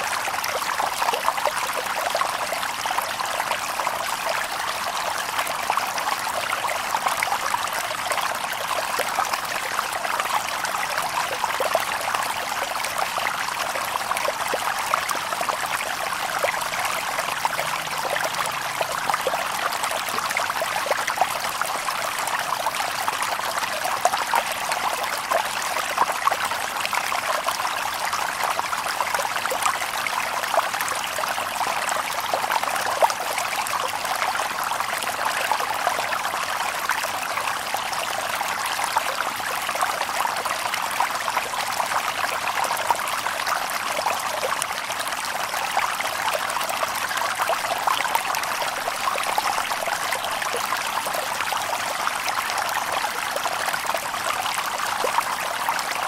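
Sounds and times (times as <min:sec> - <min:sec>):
stream babbling over stones: 0:00.0 - 0:56.0.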